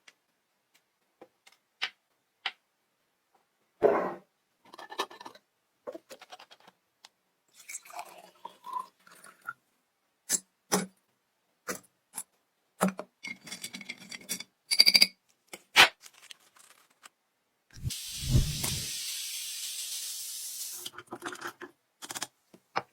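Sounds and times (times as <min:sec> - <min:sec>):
brief scrapes: 0:17.8 - 0:18.9.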